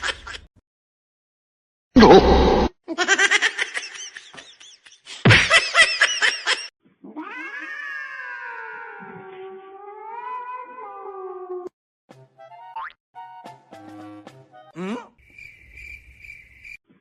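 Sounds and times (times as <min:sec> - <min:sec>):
cat calling and yowling: 0:07.0 - 0:11.7.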